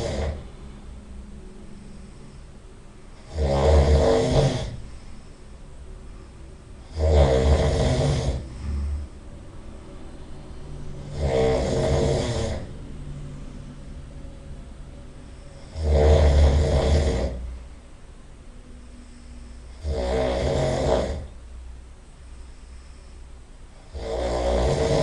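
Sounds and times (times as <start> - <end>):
person snoring loudly: 0.0 - 0.5, 3.1 - 5.4, 6.8 - 9.2, 11.0 - 12.8, 15.2 - 17.6, 19.0 - 21.4, 23.8 - 25.0
low rumble of breathing: 0.0 - 25.0.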